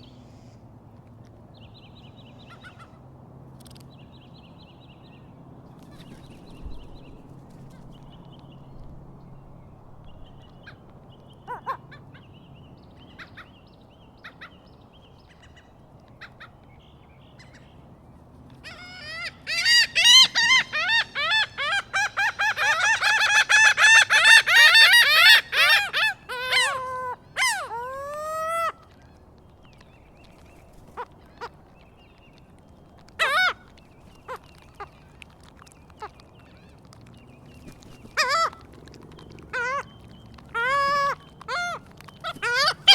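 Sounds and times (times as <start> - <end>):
seagulls calling: 10.2 - 12.4, 18.4 - 42.9.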